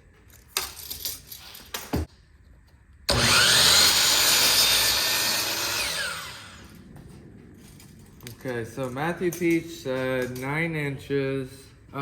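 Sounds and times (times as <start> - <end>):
electric saw cutting wood: 3.1 - 6.8.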